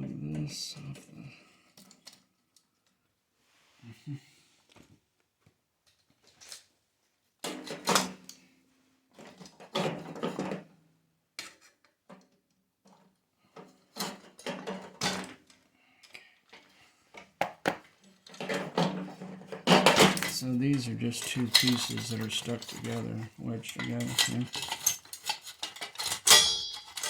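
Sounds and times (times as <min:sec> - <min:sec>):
knocks on metal: 0:17.4 - 0:17.8
metal parts clattering and scraping: 0:18.2 - 0:27.0.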